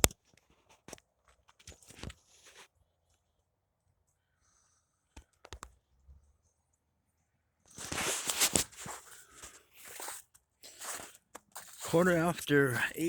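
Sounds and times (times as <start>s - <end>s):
crunching and rustling: 7.7s - 13.0s.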